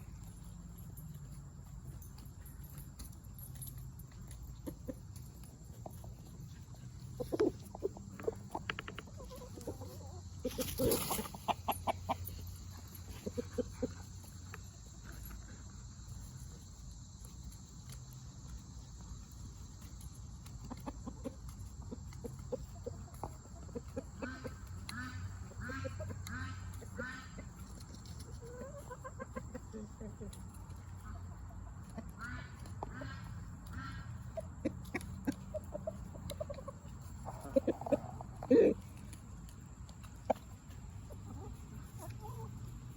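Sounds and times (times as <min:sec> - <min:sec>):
chickens clucking softly: 0:04.4 - 0:16.4, 0:17.0 - 0:42.9
quick repeated chicken calls: 0:20.6 - 0:29.7, 0:31.0 - 0:38.8.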